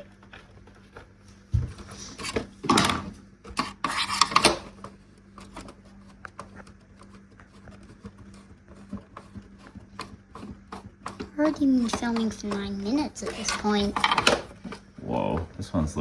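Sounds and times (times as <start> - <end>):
scraping and rubbing on plastic: 1.7 - 2.6, 3.5 - 14.9.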